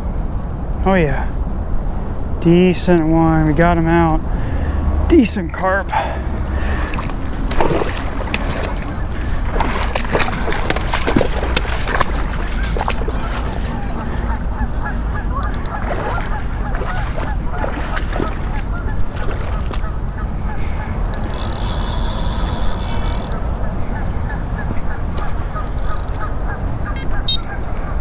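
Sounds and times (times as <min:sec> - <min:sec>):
flock of birds calling: 0:23.9 - 0:28.0.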